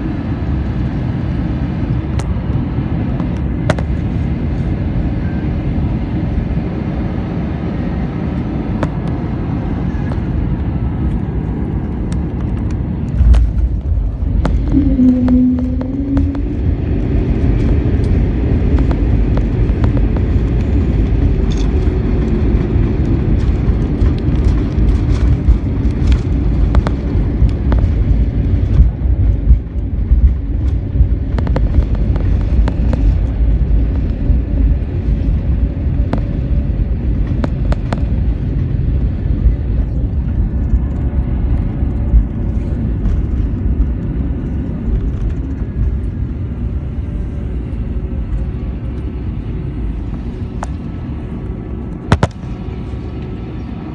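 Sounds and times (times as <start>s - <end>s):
airliner cabin engine rumble: 0.0s - 53.9s
engine tone winding down: 13.2s - 23.8s.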